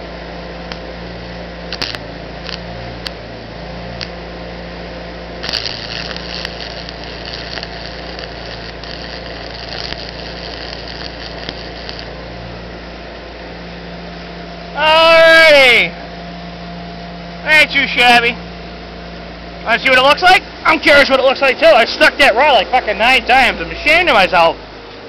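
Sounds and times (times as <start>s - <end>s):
welding machine hum: 0.0s - 15.8s
welding arc crackling: 1.6s - 3.2s, 5.4s - 12.4s.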